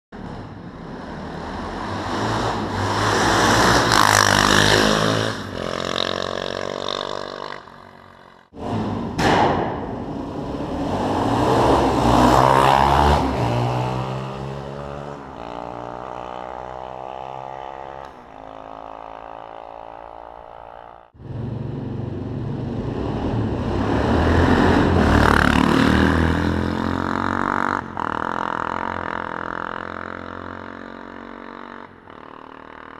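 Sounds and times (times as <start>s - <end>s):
motorcycle engines revving: 0.2s - 32.9s.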